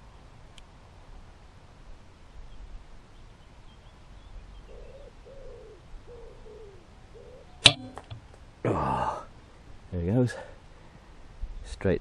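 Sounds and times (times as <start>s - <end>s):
wood pigeon cooing: 4.6s - 8.1s
air rifle shot: 7.6s - 8.2s.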